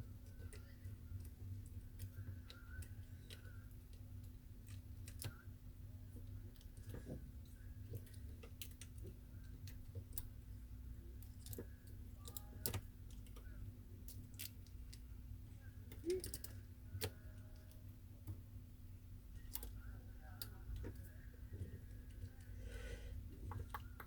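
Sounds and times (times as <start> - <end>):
faint low hum: 0.0 - 24.0
small clicks and taps of parts: 0.2 - 5.4, 6.1 - 10.3, 11.2 - 15.1, 19.4 - 22.5, 23.4 - 24.0.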